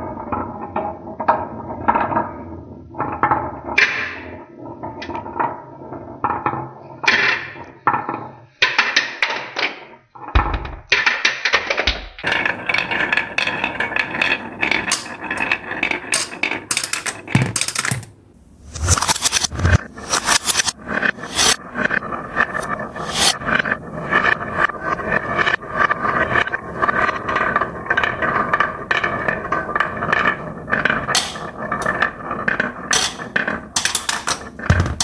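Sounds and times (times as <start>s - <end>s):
marbles clattering and rolling: 12.2s - 18.2s, 26.3s - 35.0s.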